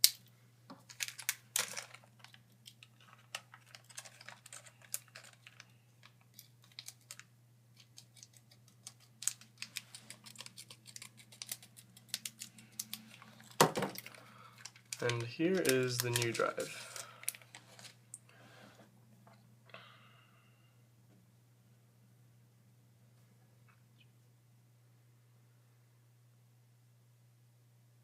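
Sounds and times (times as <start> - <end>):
faint low hum: 0.0 - 28.0
packaging clicks and crinkles: 0.8 - 18.0.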